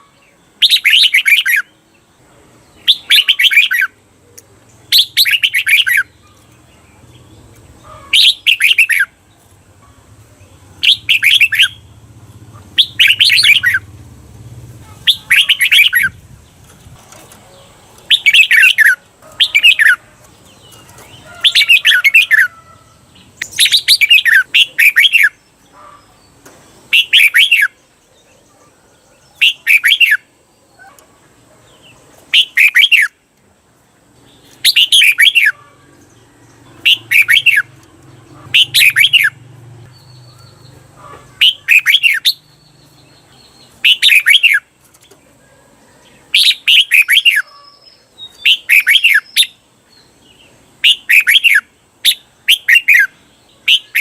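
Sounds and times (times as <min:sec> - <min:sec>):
bird singing whistled phrases: 0:29.4 - 0:30.2, 0:43.8 - 0:44.6, 0:46.4 - 0:49.6, 0:50.8 - 0:54.0.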